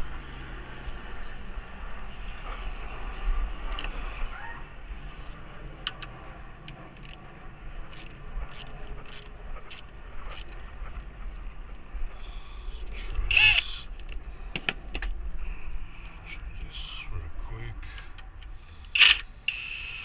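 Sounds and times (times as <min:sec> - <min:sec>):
hand tools clicking and tapping: 0:05.2 - 0:07.2, 0:07.9 - 0:10.6
loud harsh cry: 0:13.3 - 0:13.8.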